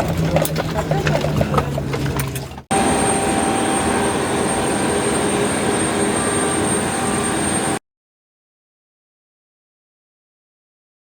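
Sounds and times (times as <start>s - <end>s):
jet engine and airflow rush: 2.7s - 7.8s
thin high whine: 2.7s - 7.8s.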